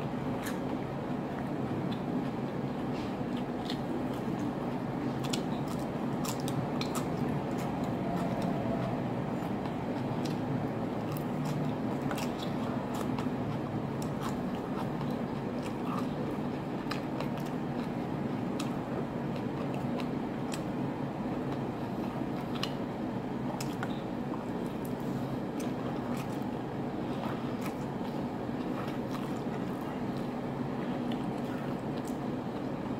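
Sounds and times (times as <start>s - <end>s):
low background hum: 0.0s - 32.9s
person biting and chewing: 2.8s - 8.6s, 9.3s - 18.0s.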